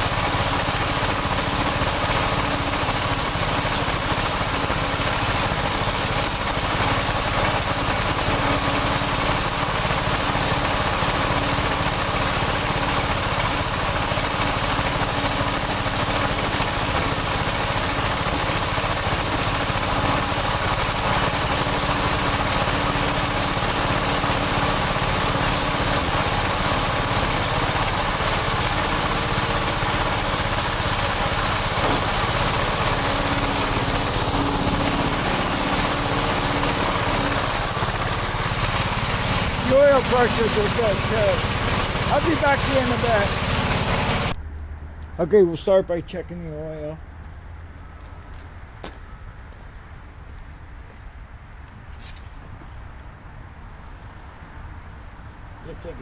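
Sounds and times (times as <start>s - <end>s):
small snowblower engine running: 0.0s - 44.4s.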